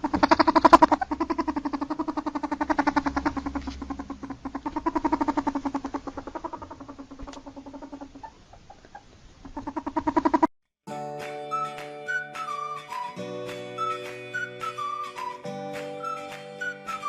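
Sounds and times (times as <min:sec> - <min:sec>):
ferret dooking: 0:00.0 - 0:10.5.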